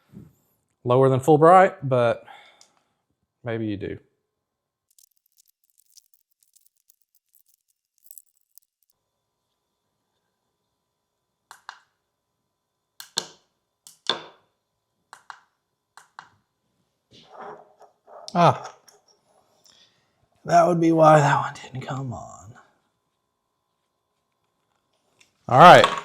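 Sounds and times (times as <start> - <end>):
faint rapid ticking: 4.9 - 8.9
small plastic parts clicking: 4.9 - 8.9.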